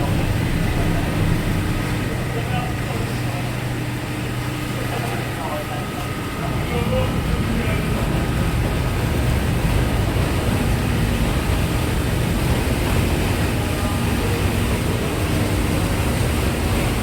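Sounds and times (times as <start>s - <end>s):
ferry engines rumbling: 0.0s - 17.0s.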